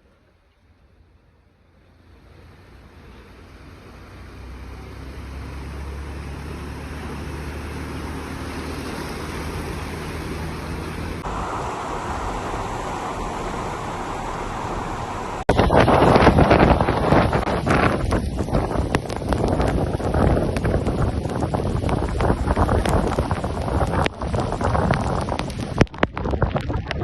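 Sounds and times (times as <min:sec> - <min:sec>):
vehicle engine running: 0:02.3 - 0:26.2
steady rushing noise: 0:05.8 - 0:27.0
bright hiss: 0:11.2 - 0:17.1.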